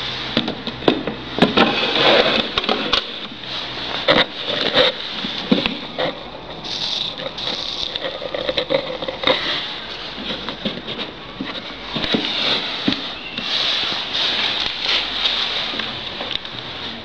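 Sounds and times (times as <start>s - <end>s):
seeds rattling in machine: 0.0s - 11.2s.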